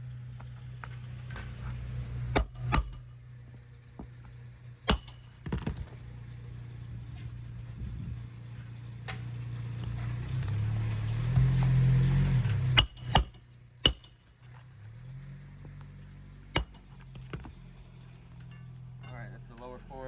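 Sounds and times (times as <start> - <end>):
steady low hum: 0.0 - 14.5, 16.4 - 20.0
hammer striking metal: 2.4 - 3.1, 4.9 - 5.7, 12.4 - 14.2, 16.6 - 17.5.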